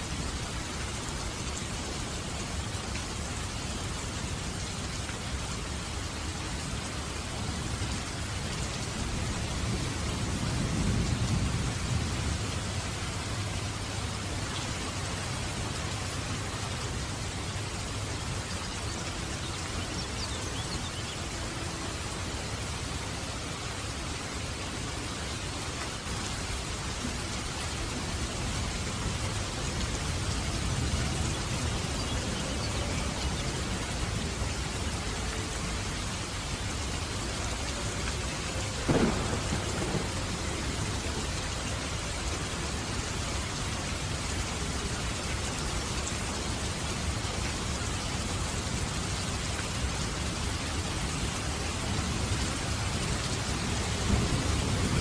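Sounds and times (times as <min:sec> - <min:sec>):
steady rain falling: 0:00.0 - 0:55.0
low thunder rumble: 0:38.8 - 0:41.2
sharp crack of thunder: 0:38.9 - 0:40.6.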